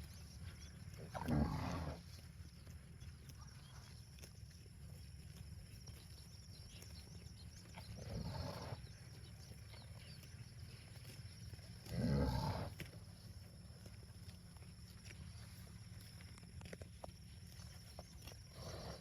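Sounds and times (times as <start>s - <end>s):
cows mooing: 1.0s - 2.1s, 11.8s - 12.8s.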